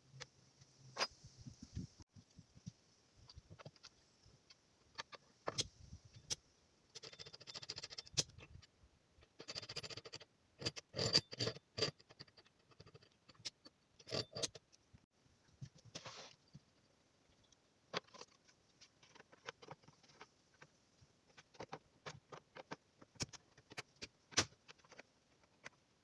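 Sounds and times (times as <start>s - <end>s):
scratchy scraping and rustling: 15.6s - 16.8s, 17.9s - 25.9s.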